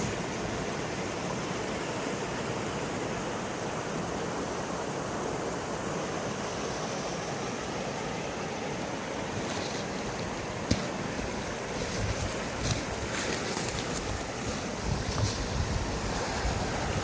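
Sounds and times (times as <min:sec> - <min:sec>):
strong gusty wind: 0:10.0 - 0:17.0.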